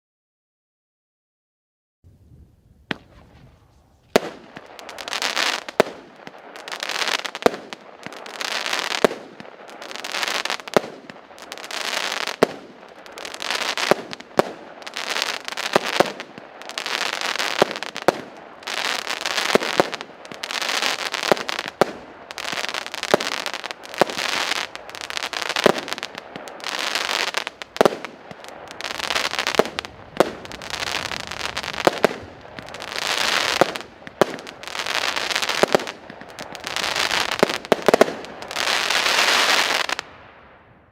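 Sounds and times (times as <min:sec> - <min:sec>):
firework launch thumps: 0:02.9 - 0:04.6
firework shells bursting: 0:02.9 - 0:40.2.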